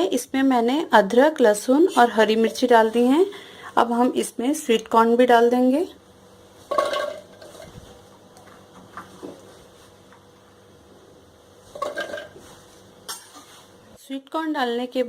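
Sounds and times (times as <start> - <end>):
utensils clattering against jar: 6.7 - 7.8, 11.8 - 12.4.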